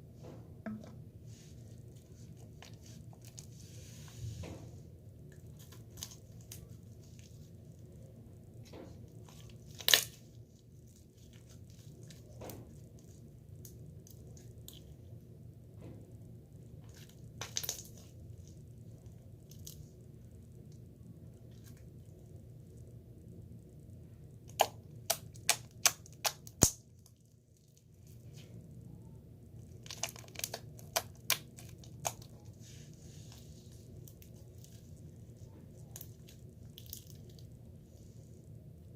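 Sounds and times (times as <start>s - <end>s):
steady low hum: 0.0s - 38.9s
handling clicks and crinkling: 29.6s - 32.6s.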